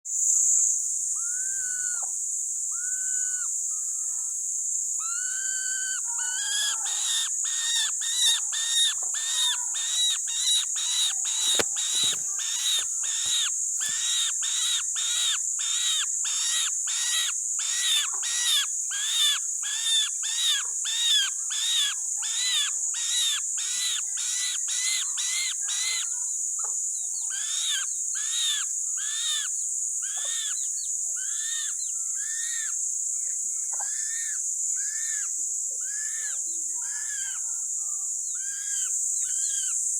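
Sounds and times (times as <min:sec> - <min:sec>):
bird calling: 0:05.0 - 0:26.1.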